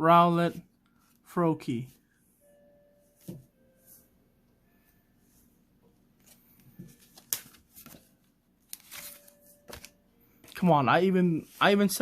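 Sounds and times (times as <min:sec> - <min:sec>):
cards and wrapper rustling: 0:06.3 - 0:10.6.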